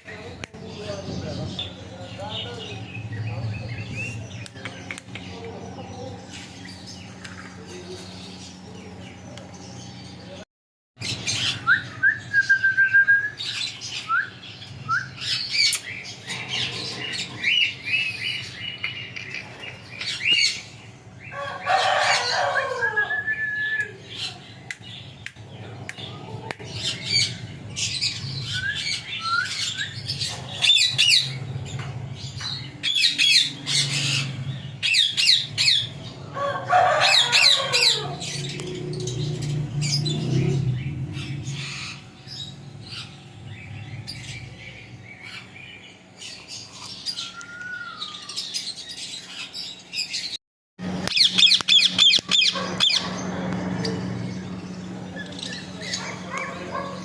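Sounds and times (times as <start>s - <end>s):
parrot whistling and chirping: 11.4s - 15.8s
parrot squawking: 32.8s - 38.5s, 51.1s - 53.3s.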